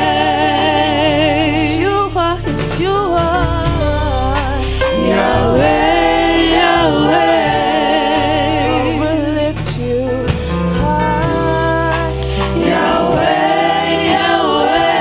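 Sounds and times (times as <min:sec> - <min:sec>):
voices singing with vibrato: 0:00.0 - 0:01.9, 0:04.8 - 0:09.4, 0:12.4 - 0:15.0
bass accompaniment: 0:00.0 - 0:15.0.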